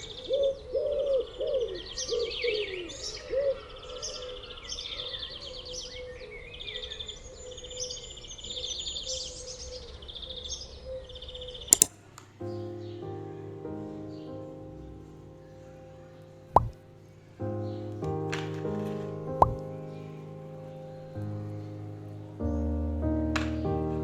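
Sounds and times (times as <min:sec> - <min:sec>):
dove cooing: 0:00.0 - 0:03.7
sharp clicks: 0:11.7 - 0:12.0
music: 0:12.4 - 0:24.0.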